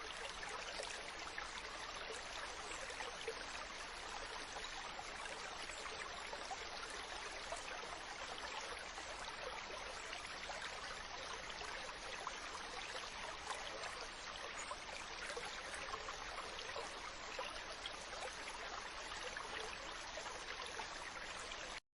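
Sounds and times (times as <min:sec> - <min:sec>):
stream babbling over stones: 0:00.0 - 0:21.8.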